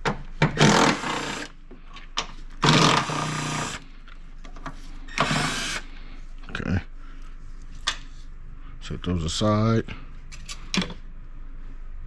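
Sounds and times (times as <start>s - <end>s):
power tool spinning bolts: 0.5s - 1.5s, 2.6s - 3.8s, 5.1s - 5.8s.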